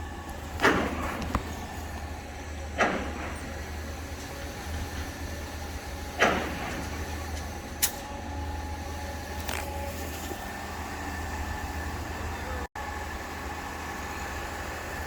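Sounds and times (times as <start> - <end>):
heavy pump clunk: 0.0 - 8.4
concrete pump truck droning: 0.0 - 15.0.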